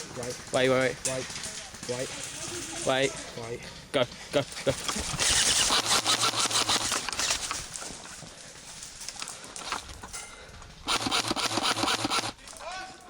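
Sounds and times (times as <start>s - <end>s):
rapid clattering clicks: 4.7s - 7.8s, 10.9s - 12.6s.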